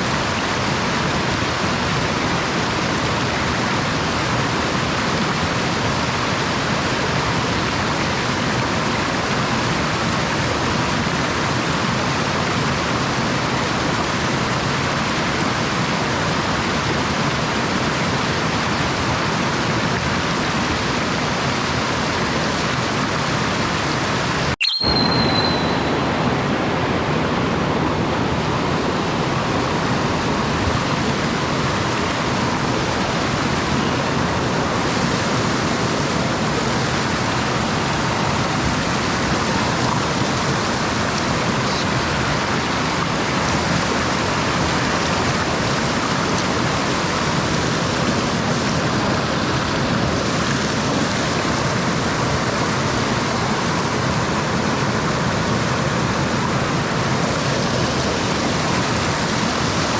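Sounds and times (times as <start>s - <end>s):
mountain stream rushing: 0.0s - 59.9s.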